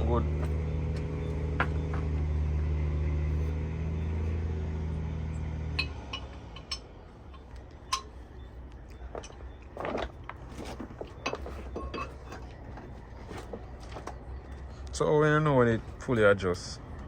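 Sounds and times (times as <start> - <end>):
low mechanical hum: 0.0 - 17.0
metallic clinks of tools: 11.2 - 12.4.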